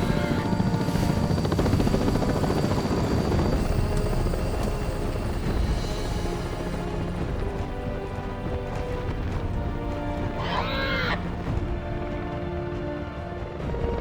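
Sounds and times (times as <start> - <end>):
film score music: 0.0 - 14.0
helicopter rotor chop: 0.0 - 14.0.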